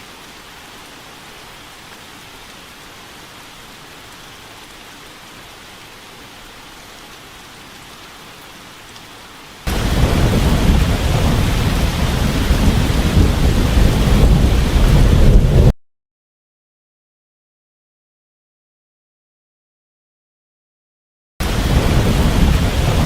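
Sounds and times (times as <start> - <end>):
heavy rain roaring: 0.0 - 15.7, 21.4 - 23.0
rain hissing: 0.0 - 15.7, 21.4 - 23.0
thunder rumbling: 9.7 - 15.7, 21.4 - 23.0.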